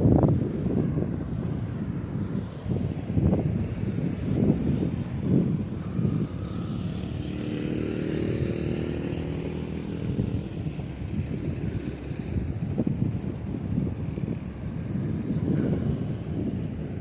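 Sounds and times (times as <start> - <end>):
wind buffeting microphone: 0.0 - 17.0
vehicle passing by: 0.7 - 12.9.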